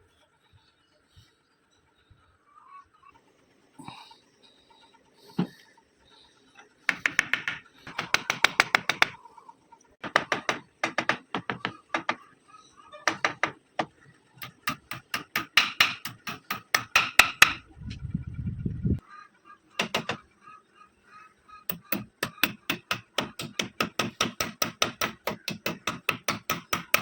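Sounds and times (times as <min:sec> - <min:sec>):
hammer tapping on wood: 0:06.9 - 0:09.2, 0:10.0 - 0:12.2, 0:13.1 - 0:17.6, 0:19.8 - 0:20.2, 0:21.7 - 0:27.0.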